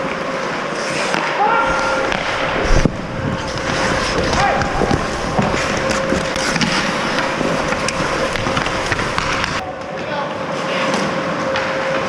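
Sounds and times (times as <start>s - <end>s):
skates scraping ice: 0.0s - 9.6s
hockey sticks and puck clacking: 0.0s - 10.1s
faint rink hum: 0.0s - 12.0s
players' voices: 1.2s - 11.4s.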